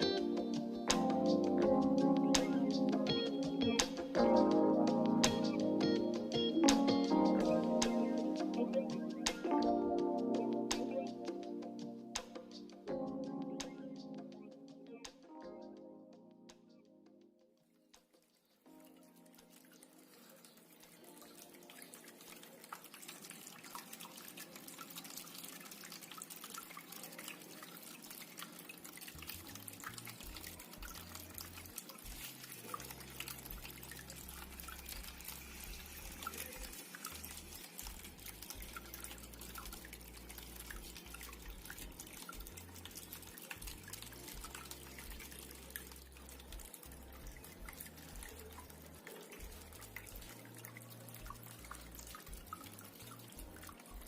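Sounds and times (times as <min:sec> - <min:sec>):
fountain water trickling: 0:00.0 - 0:14.5, 0:18.4 - 0:54.0
small water drip ticks: 0:18.0 - 0:54.0.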